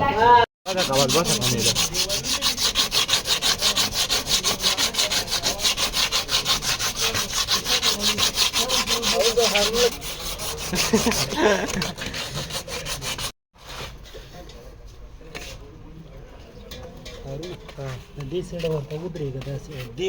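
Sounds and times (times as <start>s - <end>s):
hand sanding strokes: 0.7s - 13.9s.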